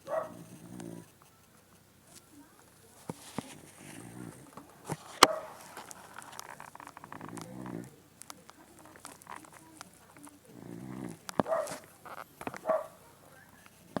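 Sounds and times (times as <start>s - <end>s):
dog snoring: 0.0s - 1.2s, 3.2s - 14.0s.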